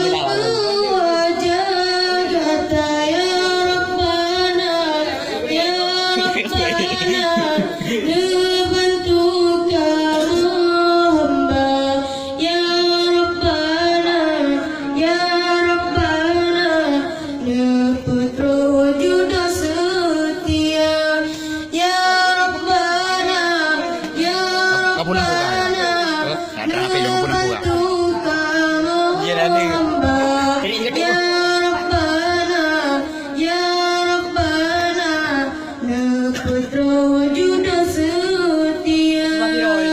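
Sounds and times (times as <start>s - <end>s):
singer breaths: 21.2s - 21.7s.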